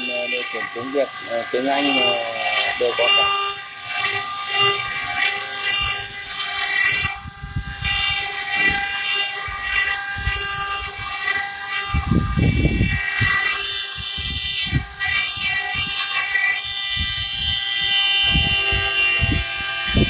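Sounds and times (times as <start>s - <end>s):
carving machine high whine: 0.0s - 20.0s
tool hissing on stone: 0.0s - 20.0s.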